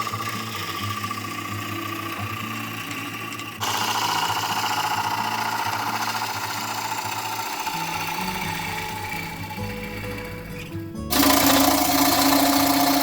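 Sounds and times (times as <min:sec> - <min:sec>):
tool cutting turning wood: 0:00.0 - 0:13.0
wood lathe spinning: 0:00.0 - 0:13.0.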